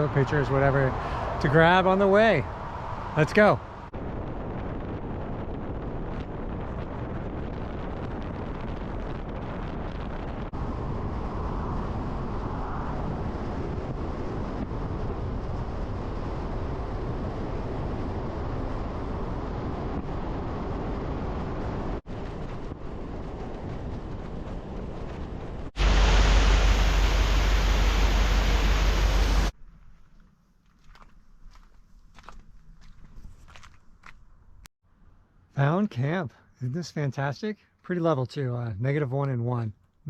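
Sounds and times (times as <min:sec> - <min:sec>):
road and wind noise in truck: 0:00.0 - 0:29.6.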